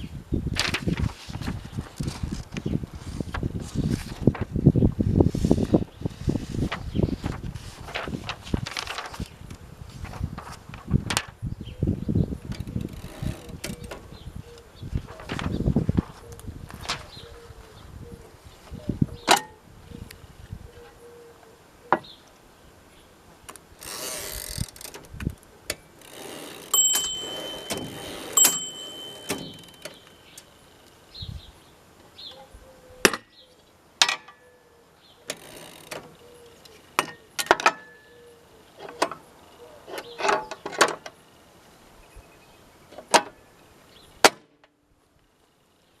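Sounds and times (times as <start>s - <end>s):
typewriter carriage sliding: 23.8s - 25.2s, 26.1s - 30.1s
typewriter bell ding: 26.7s - 30.6s
typewriter key strokes: 26.8s - 30.1s.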